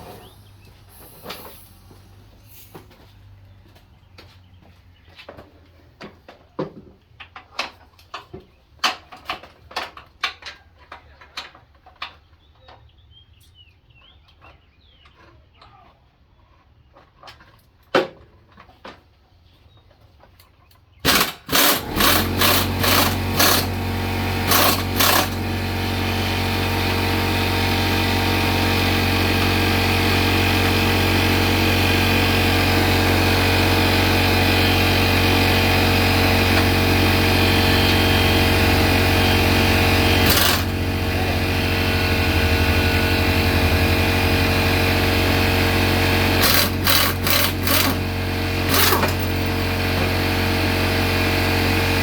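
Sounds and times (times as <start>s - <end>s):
small engine sputtering and idling: 21.0s - 52.0s.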